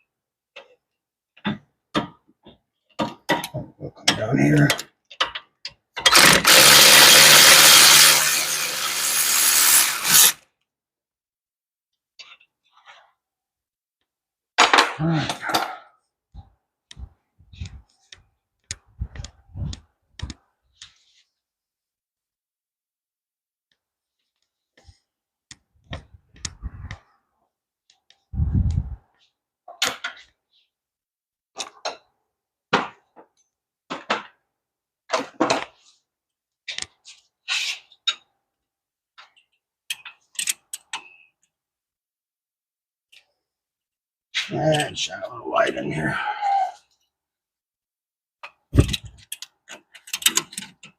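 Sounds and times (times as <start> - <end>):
ratchet clicking: 6.1 - 10.4.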